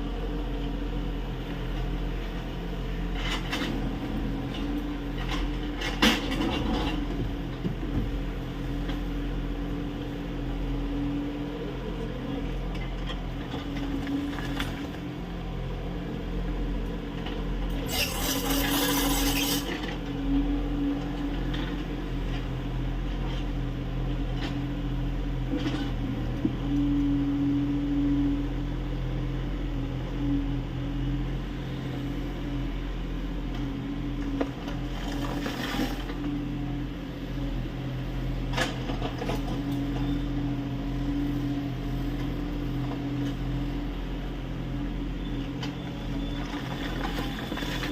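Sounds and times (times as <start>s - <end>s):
hydraulic whine: 17.8s - 19.9s.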